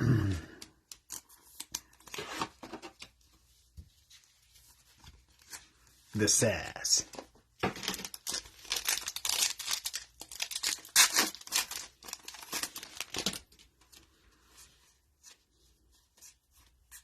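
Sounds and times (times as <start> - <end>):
foil wrapper tearing and crinkling: 7.8 - 13.5.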